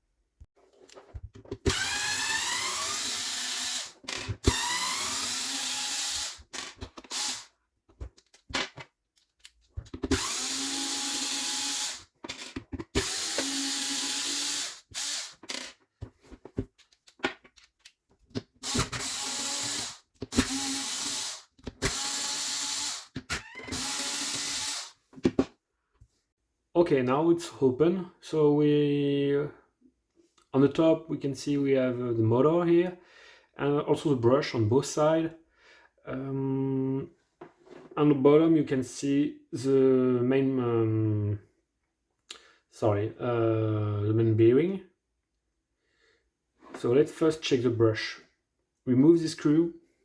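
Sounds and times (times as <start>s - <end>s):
power drill whining: 1.6s - 7.5s, 10.0s - 12.1s, 12.9s - 15.6s, 18.6s - 25.0s.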